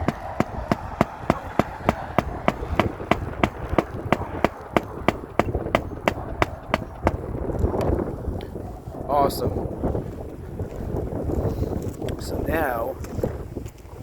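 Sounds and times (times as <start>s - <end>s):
hammer tapping on roof shingles: 0.0s - 7.9s
wind rumble on microphone: 0.0s - 14.0s.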